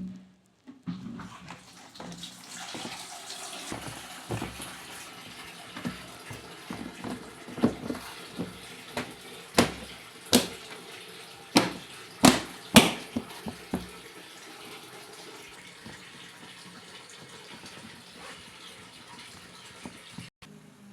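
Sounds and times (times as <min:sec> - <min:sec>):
water running: 0:01.0 - 0:20.3
sharp knocks and clatters: 0:02.0 - 0:10.8, 0:11.6 - 0:14.0.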